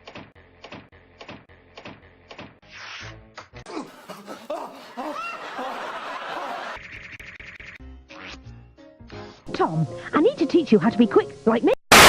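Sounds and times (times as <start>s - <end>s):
burst of laughter: 3.7s - 6.8s.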